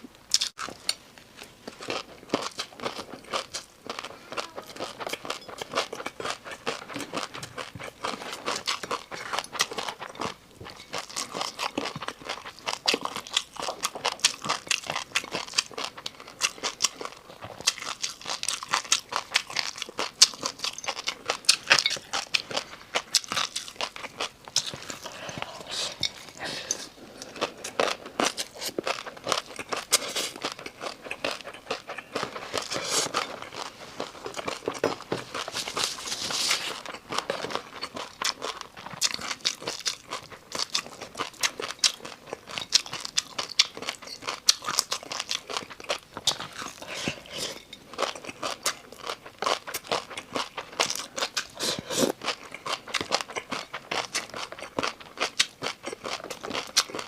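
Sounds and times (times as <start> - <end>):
person chewing crunchy food: 0.3 - 57.0.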